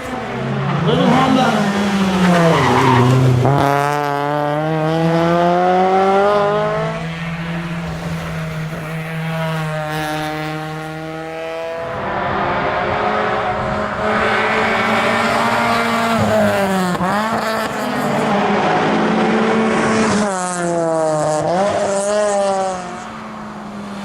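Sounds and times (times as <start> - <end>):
car engine accelerating hard: 0.0 - 24.0.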